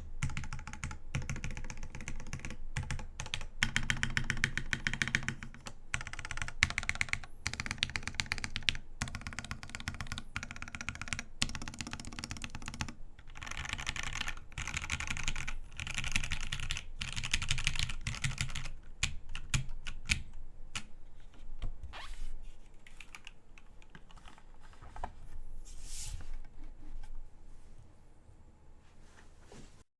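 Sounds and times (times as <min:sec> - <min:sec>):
mechanical keyboard typing: 0:00.0 - 0:20.9.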